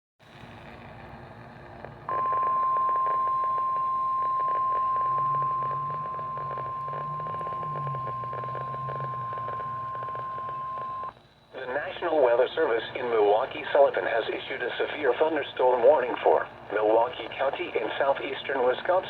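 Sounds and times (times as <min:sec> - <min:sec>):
crackly radio static: 0:00.3 - 0:19.0
high-pitched alarm beep: 0:02.1 - 0:11.1.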